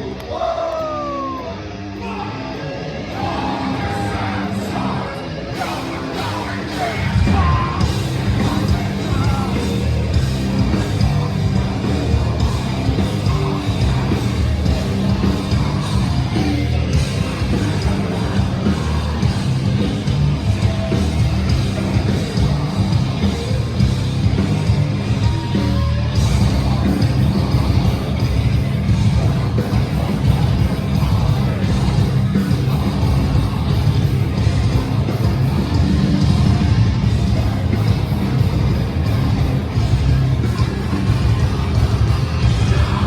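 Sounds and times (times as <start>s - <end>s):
heavy metal band playing: 0.0s - 43.0s
screamed vocals: 0.3s - 8.0s.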